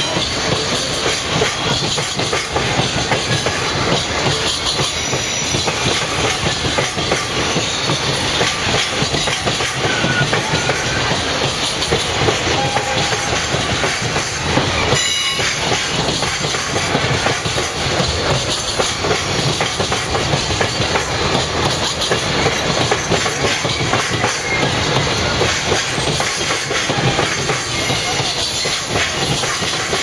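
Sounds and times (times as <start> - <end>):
freight train rumbling past: 0.0 - 30.0
wheels clacking over rail joints: 0.0 - 30.0
high wheel squeal: 4.7 - 6.0, 9.7 - 11.4, 27.0 - 29.4.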